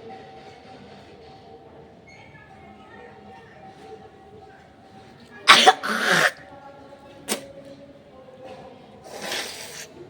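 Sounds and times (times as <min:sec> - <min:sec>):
woman blowing her nose: 0:05.5 - 0:06.4, 0:09.1 - 0:10.0
woman sneezing: 0:05.5 - 0:06.4, 0:09.1 - 0:09.9.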